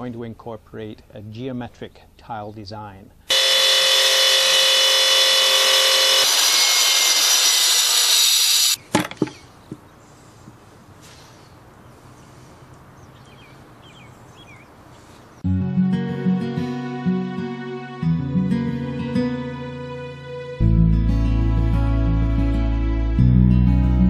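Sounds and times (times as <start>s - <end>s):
power saw whining: 3.3s - 8.8s.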